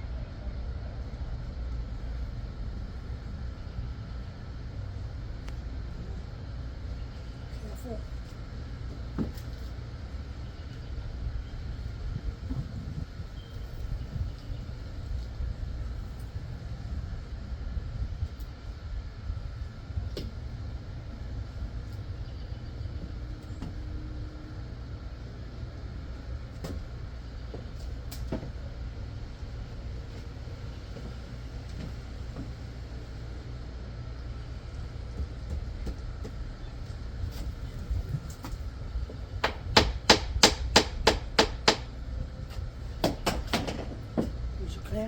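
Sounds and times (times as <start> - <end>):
steady low rumble: 0.0 - 45.0
sharp knocks: 39.4 - 41.9, 43.0 - 44.4.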